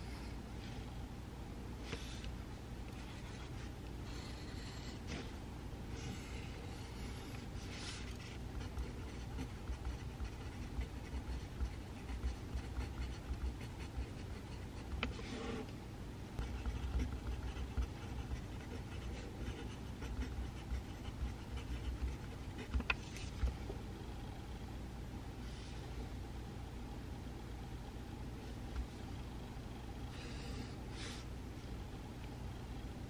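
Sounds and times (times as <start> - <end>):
low room hum: 0.0 - 33.0
pencil scratching on paper: 7.6 - 15.7, 16.4 - 23.3.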